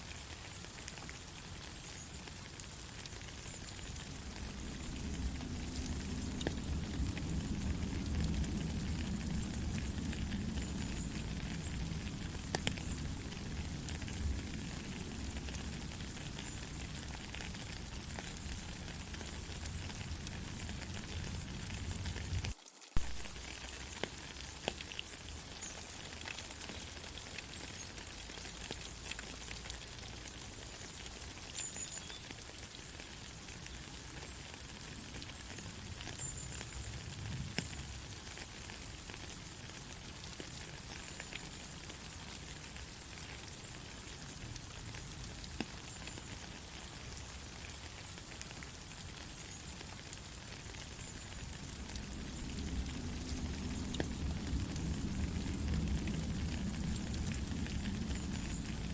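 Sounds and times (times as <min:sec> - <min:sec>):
steady rain hissing: 0:00.0 - 0:58.9.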